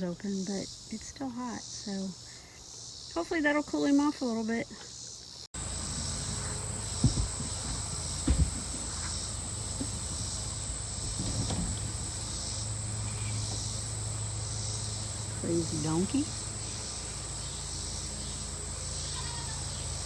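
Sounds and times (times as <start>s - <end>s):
high-pitched insect chorus: 0.0s - 20.0s
low thumps: 5.6s - 13.8s.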